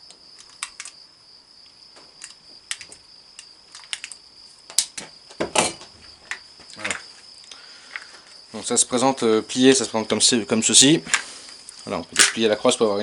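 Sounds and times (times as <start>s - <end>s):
crickets trilling: 0.0s - 13.0s.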